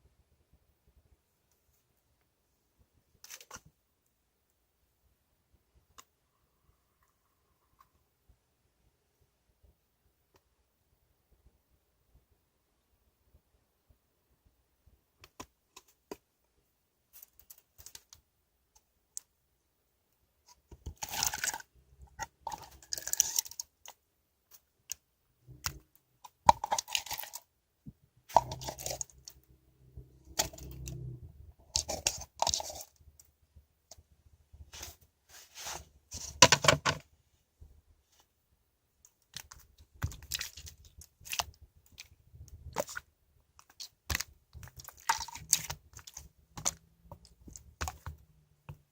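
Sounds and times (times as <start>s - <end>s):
slime squishing and popping: 24.9s - 27.5s, 28.3s - 29.4s, 39.2s - 48.2s.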